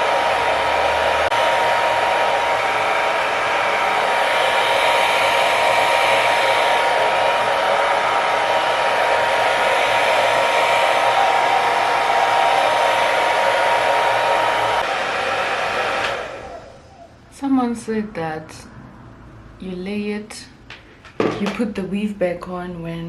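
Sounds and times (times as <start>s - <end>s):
hair dryer blowing: 0.0s - 17.2s.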